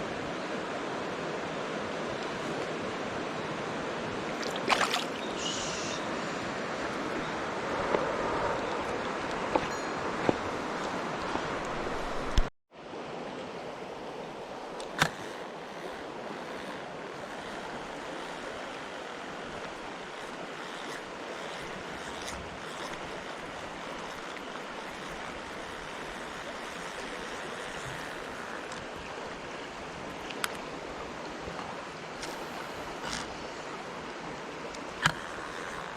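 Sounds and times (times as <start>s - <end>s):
stream rushing over rocks: 2.8s - 6.9s.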